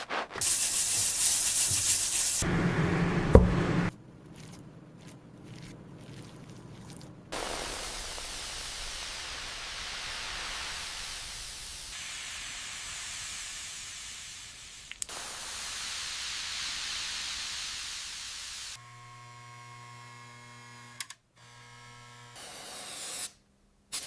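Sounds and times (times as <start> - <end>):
pressurised spray hissing: 0.4 - 2.5, 7.3 - 18.8.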